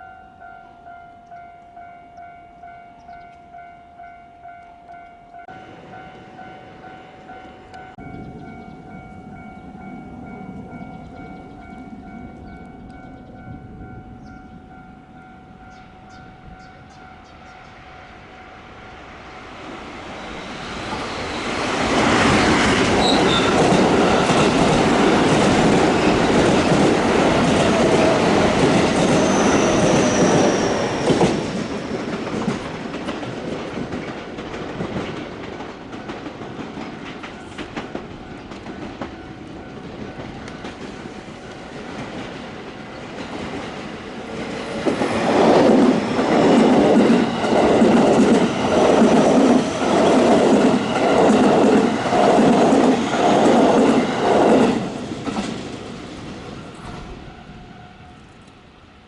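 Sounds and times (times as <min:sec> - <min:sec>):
level crossing warning bell: 0:00.0 - 0:19.4, 0:20.2 - 0:31.8, 0:35.5 - 0:43.0
train wheels clacking on rails: 0:20.1 - 0:57.6.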